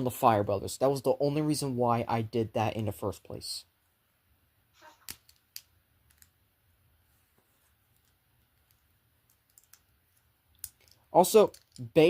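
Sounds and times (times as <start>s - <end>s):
plastic bricks clicking: 5.1s - 6.4s, 8.0s - 12.0s.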